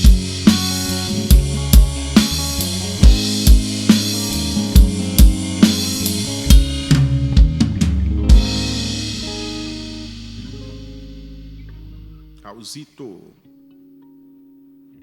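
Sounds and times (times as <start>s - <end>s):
drum fill: 0.0s - 11.7s
rock band playing live: 0.0s - 12.4s.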